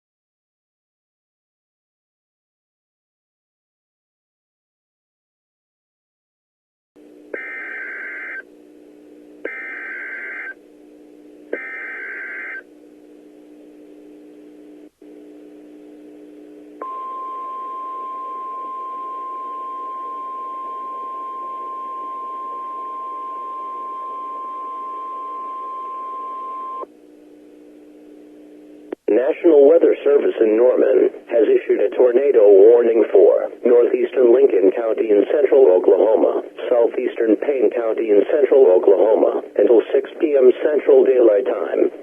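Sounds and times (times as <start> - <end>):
steady low hum: 7.0 - 42.0
single-pitch warning alarm tone: 7.4 - 8.5, 9.4 - 10.6, 11.5 - 12.7, 16.8 - 26.8.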